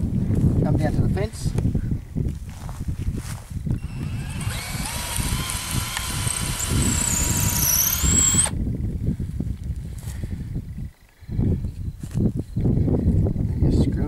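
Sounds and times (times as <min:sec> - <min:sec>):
power drill drilling into wood: 0:03.8 - 0:08.6.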